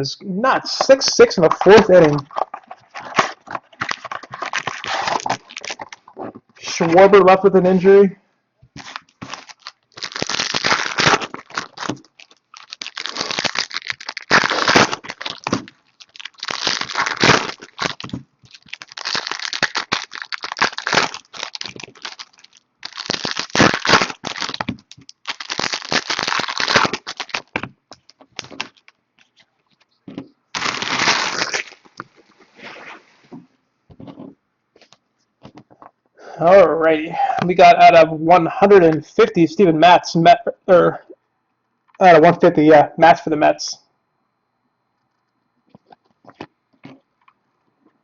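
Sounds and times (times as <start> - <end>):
wrappers tearing and crinkling: 0.8 - 7.1, 8.8 - 29.4, 30.5 - 33.0.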